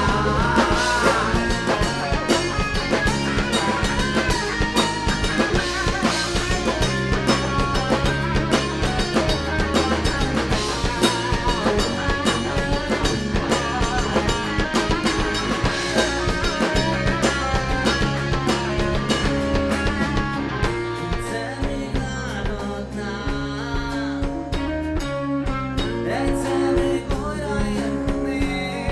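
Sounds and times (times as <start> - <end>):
drum kit hits: 0.0 - 22.6
rock band playing live: 0.0 - 28.9.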